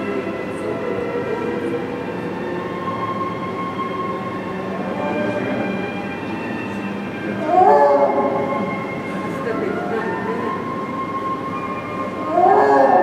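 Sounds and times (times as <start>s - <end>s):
snow leopard long cries: 7.3s - 8.8s, 12.2s - 13.0s.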